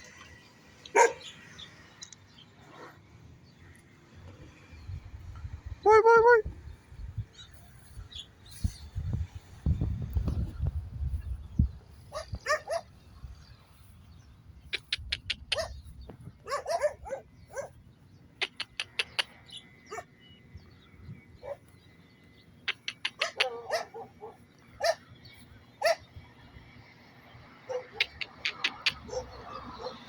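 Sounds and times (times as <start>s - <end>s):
dogs barking and yipping: 0.8s - 1.5s, 12.0s - 13.0s, 14.7s - 17.8s, 18.4s - 20.2s, 21.4s - 21.8s, 22.7s - 26.1s, 27.5s - 30.0s.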